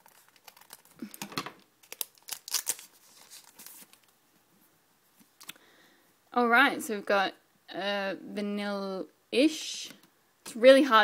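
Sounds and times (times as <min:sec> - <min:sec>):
foil pack tearing and crinkling: 0:00.0 - 0:04.1.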